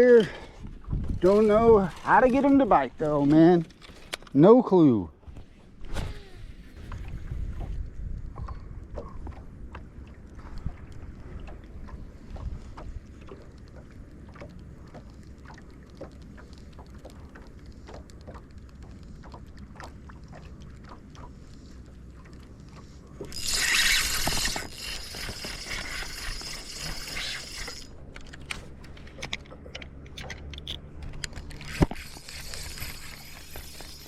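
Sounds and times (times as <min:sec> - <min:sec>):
fishing reel gears clicking: 0:23.3 - 0:28.4, 0:30.1 - 0:34.0.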